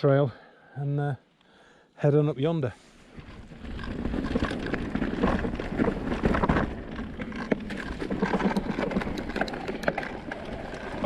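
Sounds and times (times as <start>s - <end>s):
tyres rumbling on rough trail: 3.0s - 11.0s
bike rattles and knocks: 3.2s - 11.0s.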